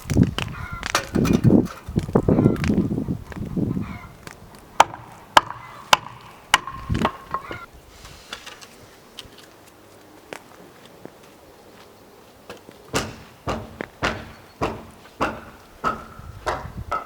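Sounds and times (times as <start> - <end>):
tool striking wood: 4.8 - 7.7, 12.9 - 17.0.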